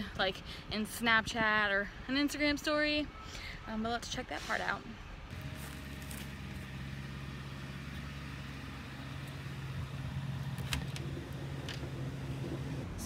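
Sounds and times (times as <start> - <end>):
engine idling: 5.3 - 13.0.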